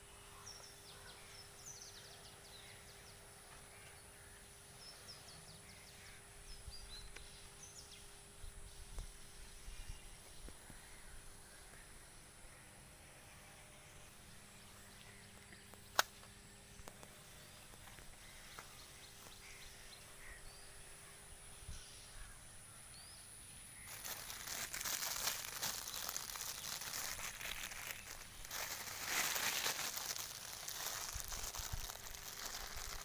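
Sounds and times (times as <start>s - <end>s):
faint bird chirps: 0.0s - 33.0s
crinkling and rustling: 23.9s - 33.0s.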